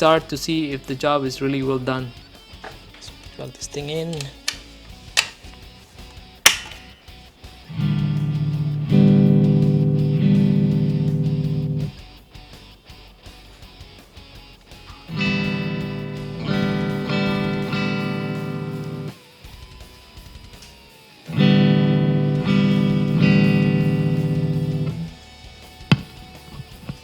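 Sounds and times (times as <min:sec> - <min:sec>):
sharp click: 0:04.1 - 0:05.5, 0:06.4 - 0:07.0
electric guitar strummed chords: 0:07.6 - 0:12.2, 0:14.9 - 0:19.2, 0:21.3 - 0:27.0.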